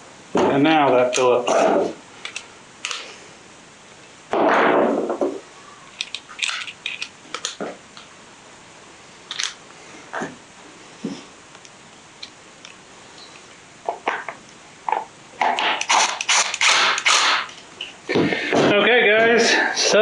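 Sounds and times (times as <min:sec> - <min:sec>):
clicks and taps of parts: 0:06.0 - 0:08.1.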